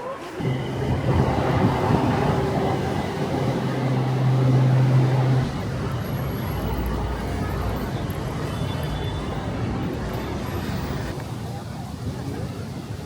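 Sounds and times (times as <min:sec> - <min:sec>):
vehicle running with low hum: 0:00.4 - 0:07.0.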